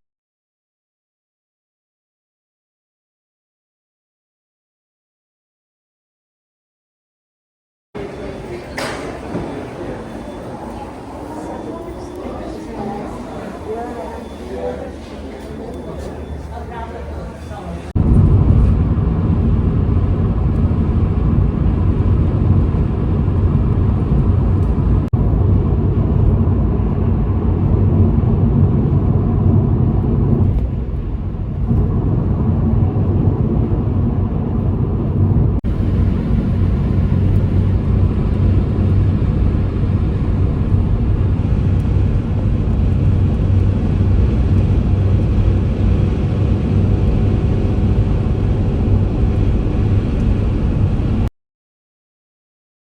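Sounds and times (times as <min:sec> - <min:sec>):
road rumble: 0:08.0 - 0:51.3
car engine: 0:31.6 - 0:51.2.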